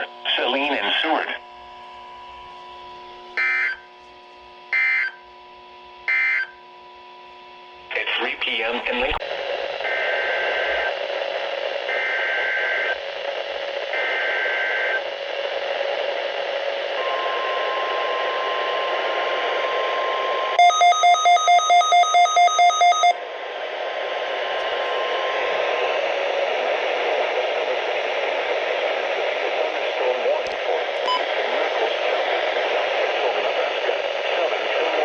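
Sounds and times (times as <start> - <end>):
radio hiss: 0.0 - 3.2, 7.9 - 19.9, 23.4 - 35.0
steady warning alarm tone: 3.3 - 4.0, 4.7 - 5.3, 6.0 - 6.6, 13.9 - 15.1, 17.0 - 23.2
rapid electronic beeping: 31.0 - 31.4.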